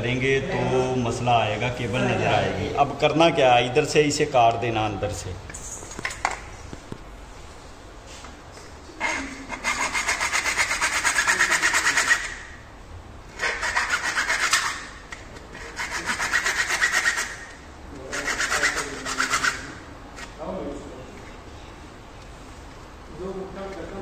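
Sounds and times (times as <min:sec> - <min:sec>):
hand saw cutting plastic: 0:13.4 - 0:14.9, 0:15.6 - 0:19.7.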